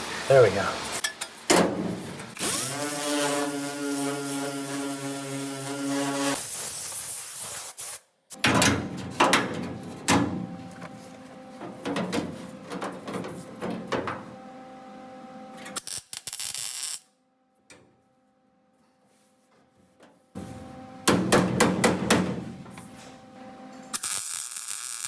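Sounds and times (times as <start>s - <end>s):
metal knocks on sheet steel: 21.1s - 22.4s.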